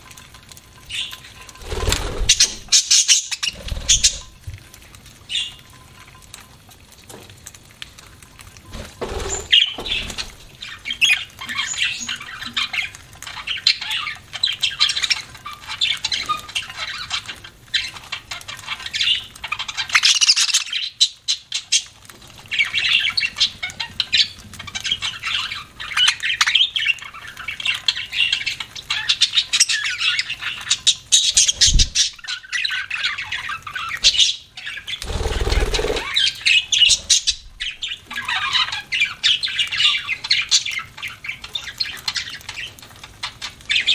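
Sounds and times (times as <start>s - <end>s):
budgerigars chirping: 0.9s - 4.3s, 28.0s - 42.7s.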